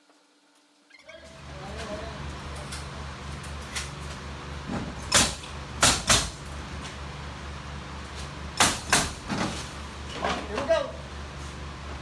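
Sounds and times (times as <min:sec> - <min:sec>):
steady low hum: 0:01.0 - 0:12.0
hammer striking nails into lumber: 0:05.1 - 0:06.4, 0:08.6 - 0:09.2.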